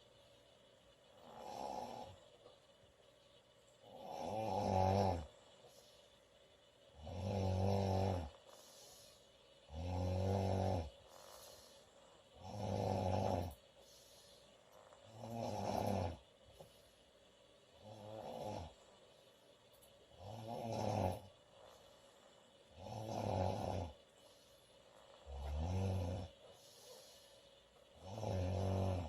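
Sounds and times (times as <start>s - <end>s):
woman snoring loudly: 1.2s - 2.2s, 3.8s - 5.4s, 7.0s - 8.6s, 9.7s - 11.8s, 12.4s - 13.6s, 14.8s - 16.2s, 17.8s - 18.8s, 20.2s - 21.8s, 22.7s - 24.0s, 25.0s - 26.3s, 28.0s - 29.0s.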